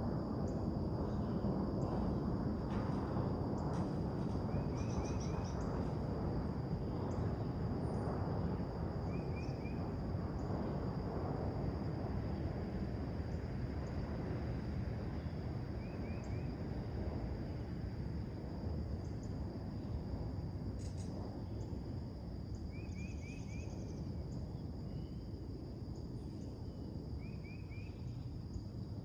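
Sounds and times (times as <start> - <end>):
low background rumble: 0.0 - 15.8.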